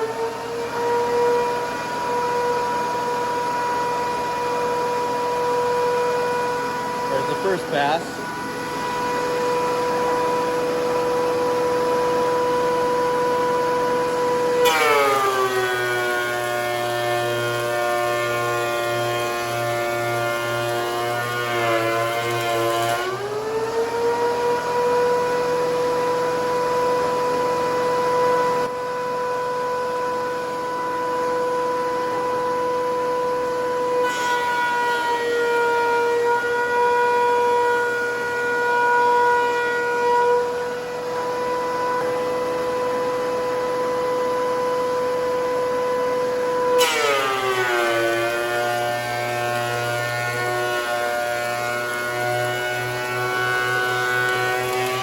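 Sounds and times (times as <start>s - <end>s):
thickness planer whine: 0.0s - 55.0s.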